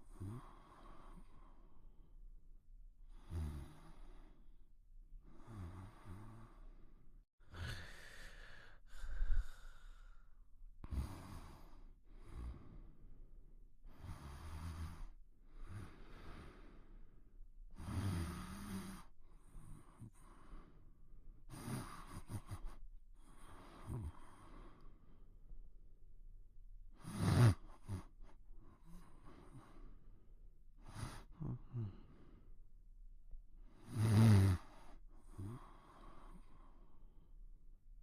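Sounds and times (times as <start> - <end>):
quiet snoring: 0.0 - 1.8, 3.1 - 4.4, 5.3 - 10.2, 10.8 - 13.2, 13.9 - 20.8, 21.5 - 25.1, 26.9 - 30.1, 30.8 - 32.5, 33.7 - 37.2.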